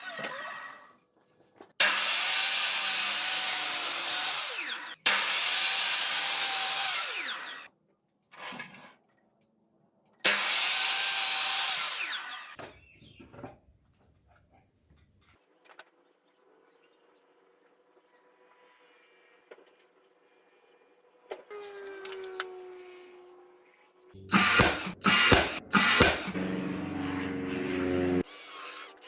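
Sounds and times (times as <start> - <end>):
power tool motor whining: 24.2 - 28.2.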